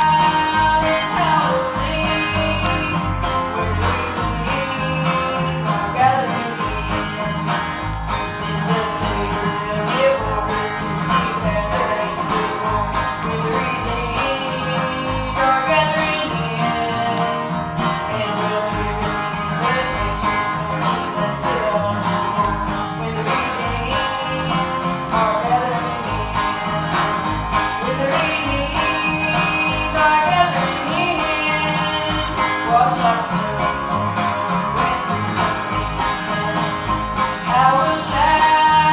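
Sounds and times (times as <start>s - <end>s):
acoustic guitar picking: 0.0s - 38.9s
banjo picking: 0.0s - 38.9s
bluegrass band playing: 0.0s - 38.9s.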